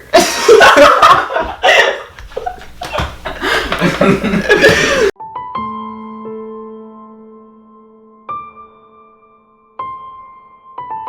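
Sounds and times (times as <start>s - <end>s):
person laughing: 0.0s - 5.1s.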